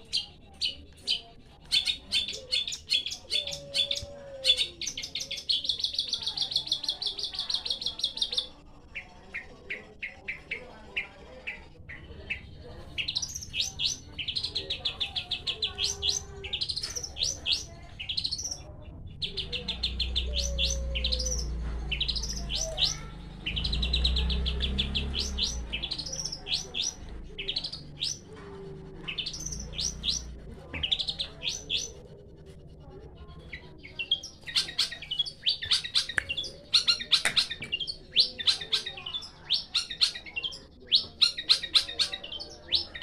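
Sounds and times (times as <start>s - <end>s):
shrike singing trills and whistles: 19.2s - 28.2s, 29.1s - 32.0s, 33.5s - 43.0s.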